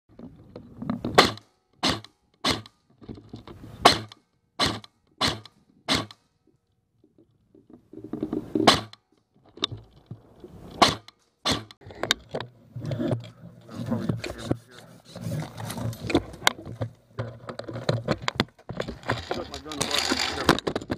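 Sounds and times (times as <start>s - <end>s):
airsoft gun shots: 1.2s - 2.7s, 3.8s - 6.2s, 8.7s - 9.0s, 10.8s - 11.7s.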